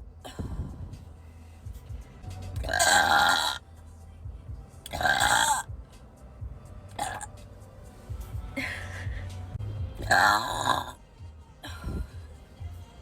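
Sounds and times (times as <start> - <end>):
person burping loudly: 2.6 - 3.6, 4.9 - 5.7, 7.0 - 7.3, 10.0 - 11.0.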